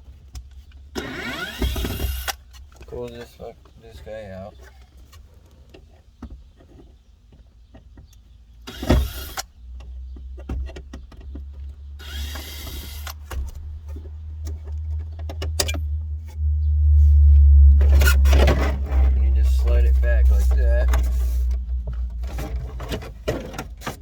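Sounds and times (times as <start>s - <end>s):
low rumble: 13.4s - 23.3s.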